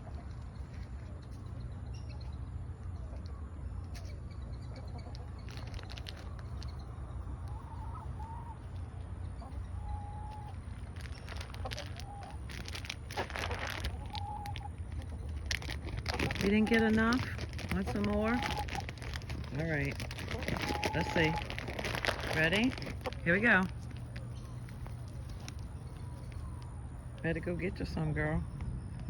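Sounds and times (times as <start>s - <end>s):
hens clucking: 0.0s - 28.1s
rustling: 5.1s - 6.9s, 10.5s - 26.7s.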